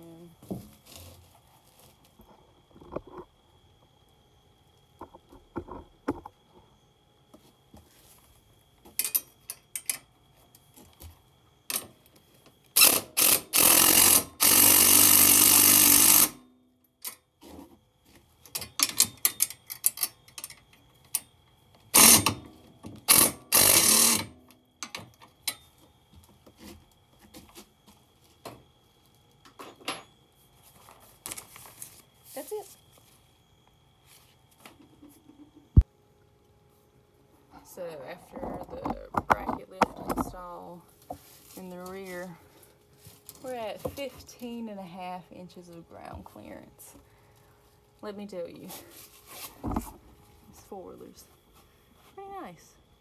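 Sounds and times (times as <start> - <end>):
power tool driving nut: 12.8 - 16.4, 22.0 - 22.4, 23.0 - 24.3.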